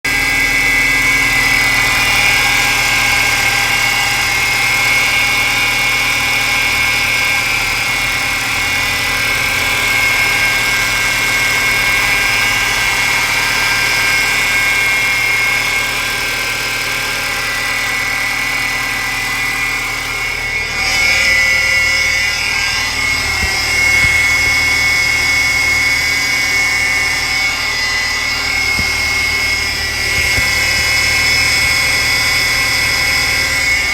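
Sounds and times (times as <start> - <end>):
high-pitched belt pulley whine: 0.0 - 33.9
car engine idling: 7.4 - 33.7.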